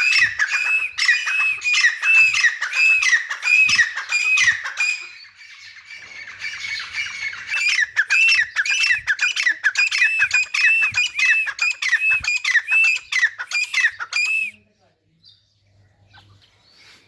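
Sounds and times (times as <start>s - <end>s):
francolin calling shrilly: 0.0s - 5.2s, 6.8s - 14.6s.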